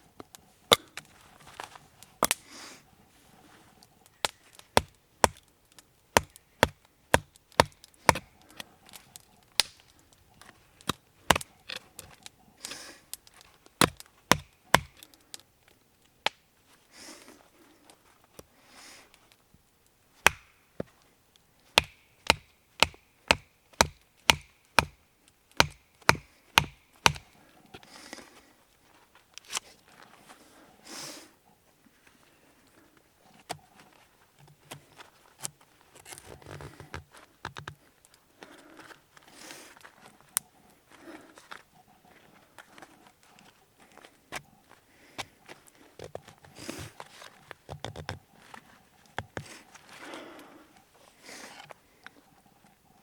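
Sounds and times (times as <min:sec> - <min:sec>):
axe chopping wood: 0:00.7 - 0:01.0, 0:04.3 - 0:05.5, 0:06.2 - 0:08.4, 0:09.6 - 0:09.8, 0:10.8 - 0:11.5, 0:13.8 - 0:15.1, 0:20.2 - 0:20.9, 0:21.7 - 0:25.0, 0:25.6 - 0:27.4.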